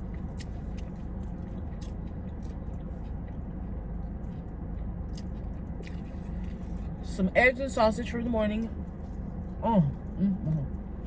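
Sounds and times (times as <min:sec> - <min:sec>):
close-up chewing: 0:00.0 - 0:07.1
steady low rumble: 0:00.0 - 0:11.0.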